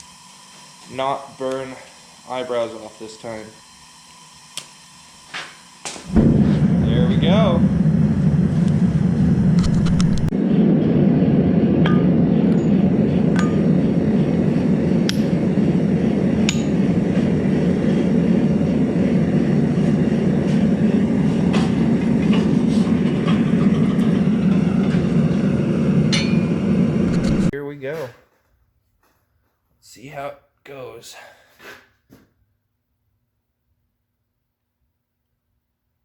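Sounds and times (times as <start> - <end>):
forge burner rushing: 0.0 - 27.5.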